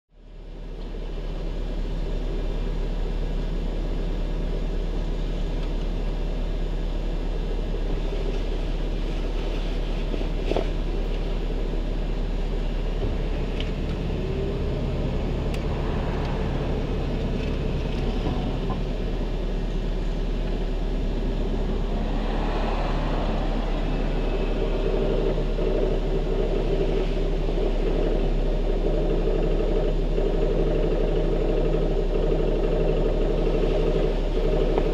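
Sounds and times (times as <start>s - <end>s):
car engine idling: 0.2s - 34.9s
engine rattling: 0.2s - 34.9s
metallic scraping: 20.6s - 27.2s.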